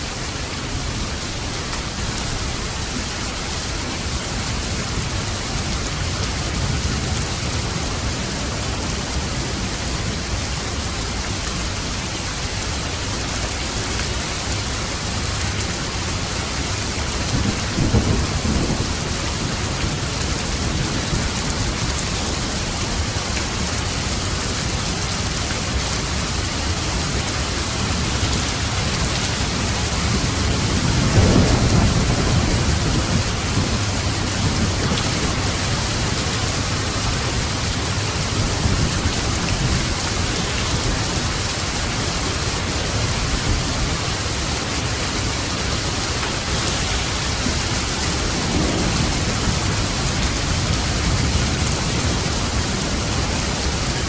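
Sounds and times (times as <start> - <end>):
steady rain falling: 0.0 - 54.0
thunder rumbling: 16.9 - 23.0, 27.7 - 54.0.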